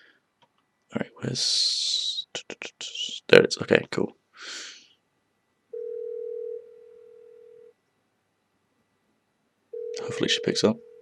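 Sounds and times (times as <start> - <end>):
breathy hiss: 4.4 - 5.0
telephone ringing tone: 5.7 - 7.7, 9.7 - 11.0.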